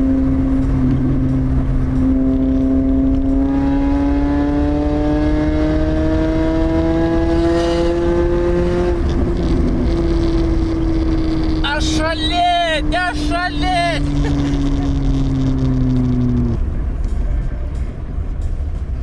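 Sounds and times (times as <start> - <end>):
loud car exhaust accelerating: 0.0 - 11.7, 14.0 - 17.4.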